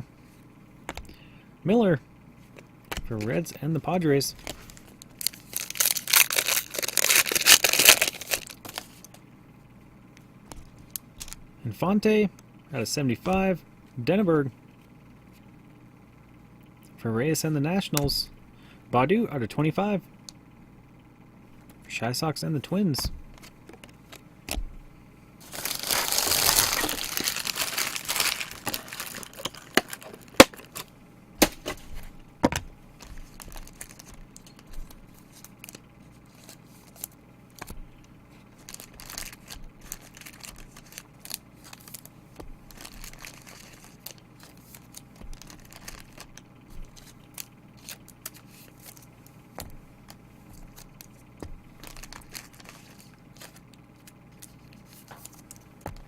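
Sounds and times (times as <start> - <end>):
packaging wrap crinkling and tearing: 4.4 - 9.1, 25.4 - 30.9, 33.0 - 37.7, 38.6 - 42.1, 42.7 - 49.1, 51.8 - 55.6
soft rustling of wrappers: 4.4 - 9.2, 25.4 - 30.9, 33.0 - 37.7, 38.3 - 49.2, 50.0 - 56.0.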